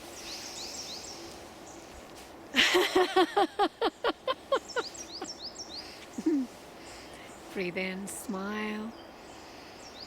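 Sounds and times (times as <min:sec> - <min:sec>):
birds chirping faintly: 0:00.0 - 0:02.1, 0:03.8 - 0:10.0
person laughing: 0:02.6 - 0:05.0, 0:06.2 - 0:06.6.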